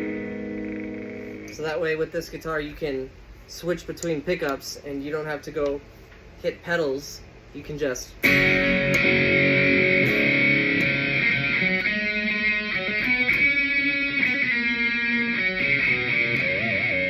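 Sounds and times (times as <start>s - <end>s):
electric guitar through an amp: 0.0s - 1.6s, 8.2s - 17.0s.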